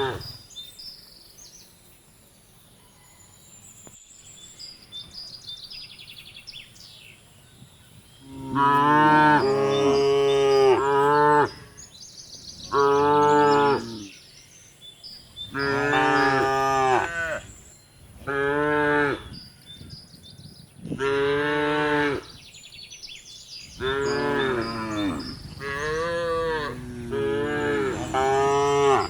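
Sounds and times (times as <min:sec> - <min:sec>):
cattle mooing: 0:15.5 - 0:17.4, 0:23.8 - 0:29.0.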